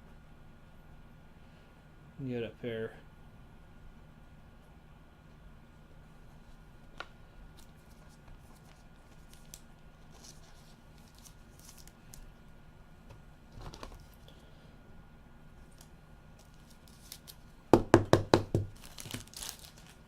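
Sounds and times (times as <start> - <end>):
cards and packaging rustling: 7.0 - 12.4, 13.5 - 14.3, 15.6 - 17.5, 18.6 - 20.0.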